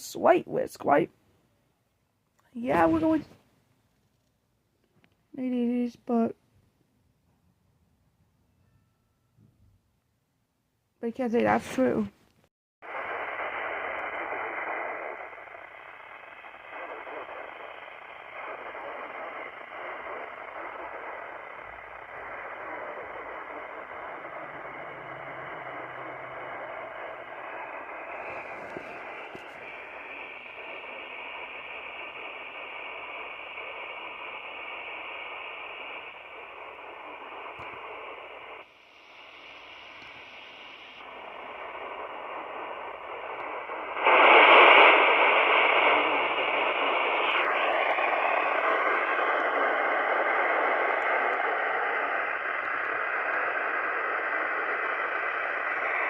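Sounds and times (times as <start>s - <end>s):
radio static hiss: 2.6s - 3.4s, 12.8s - 56.0s
faint steady tone: 8.2s - 10.1s, 12.9s - 44.2s.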